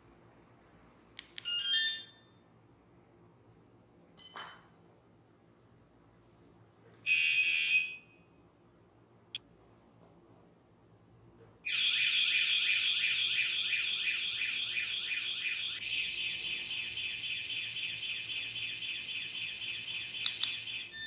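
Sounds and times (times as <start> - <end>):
electronic alarm siren: 7.1 - 8.0, 11.7 - 21.0
sharp clicks: 20.2 - 20.7.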